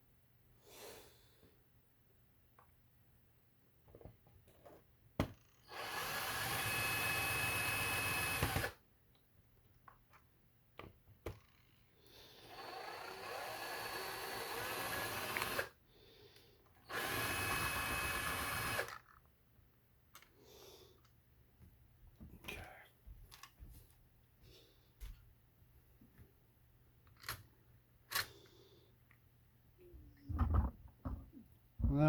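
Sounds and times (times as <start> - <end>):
electric drill whining: 5.6 - 8.8, 12.4 - 15.8, 16.8 - 19.0.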